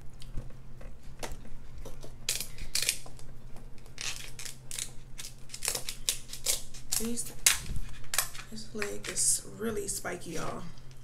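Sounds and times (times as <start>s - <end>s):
crab shell cracking: 1.2s - 9.2s.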